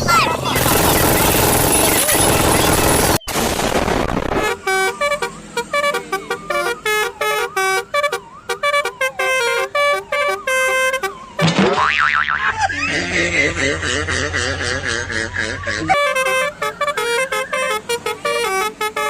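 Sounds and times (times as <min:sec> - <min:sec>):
multi-tone air horn melody: 0:04.4 - 0:11.5, 0:15.9 - 0:19.0.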